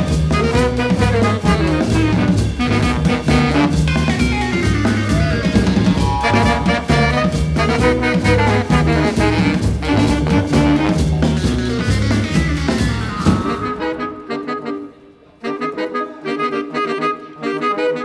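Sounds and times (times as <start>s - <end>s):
drums and bass: 0.0s - 14.0s
saxophone and brass: 0.0s - 18.0s.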